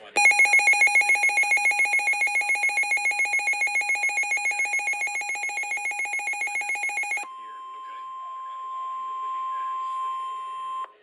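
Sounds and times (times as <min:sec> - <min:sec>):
rapidly pulsing electronic beep: 0:00.0 - 0:07.2.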